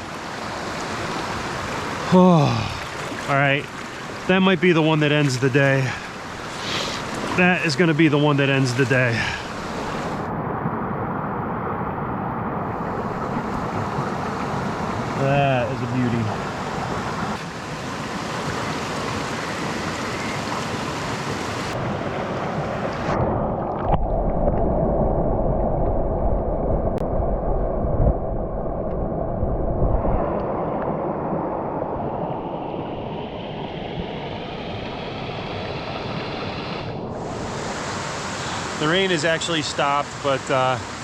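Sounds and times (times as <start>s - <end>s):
brook water rushing: 0.0s - 10.3s, 12.6s - 24.7s, 33.5s - 41.0s
deep muffled rumble: 23.3s - 30.4s.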